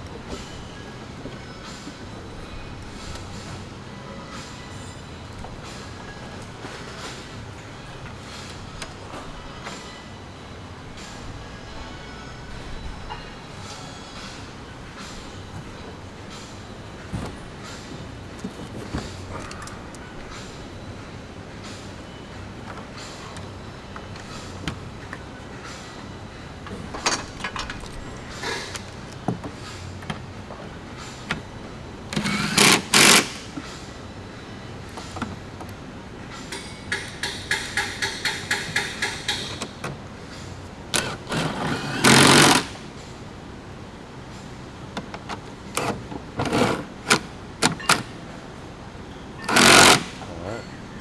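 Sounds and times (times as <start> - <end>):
power driver running: 31.4 - 34.0, 36.5 - 39.8, 40.8 - 43.0, 45.2 - 48.7, 49.4 - 50.6
knocks and clicks of tools: 32.1 - 33.8, 36.5 - 40.1, 41.0 - 42.9, 45.0 - 48.2, 49.4 - 50.3
rapid clicking: 49.4 - 50.3.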